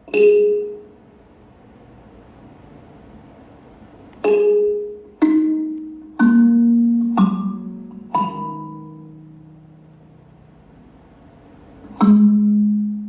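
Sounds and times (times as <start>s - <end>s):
marimba notes descending: 0.0s - 1.1s, 4.2s - 9.6s.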